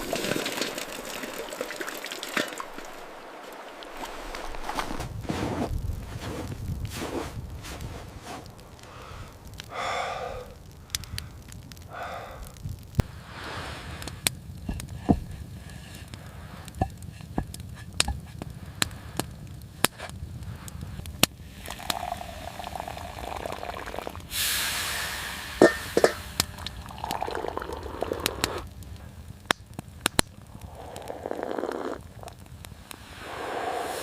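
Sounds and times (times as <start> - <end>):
wood fire crackling and popping: 0.0 - 34.0
hissing: 21.4 - 28.9, 30.2 - 34.0.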